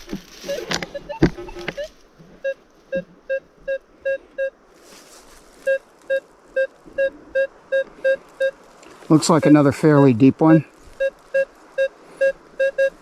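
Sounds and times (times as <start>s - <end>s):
metal detector beeping: 0.4s - 4.6s, 5.7s - 8.6s, 9.4s - 9.8s, 11.0s - 13.0s.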